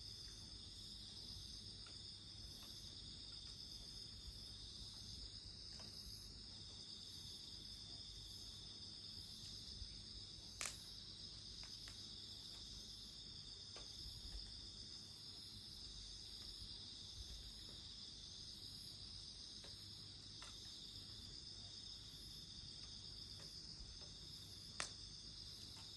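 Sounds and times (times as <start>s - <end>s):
crickets chirping: 0.0s - 25.9s
campfire popping: 10.5s - 11.0s.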